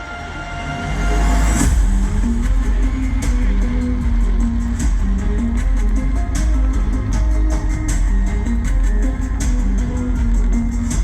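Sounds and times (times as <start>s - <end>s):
deep low rumble: 0.9s - 11.0s.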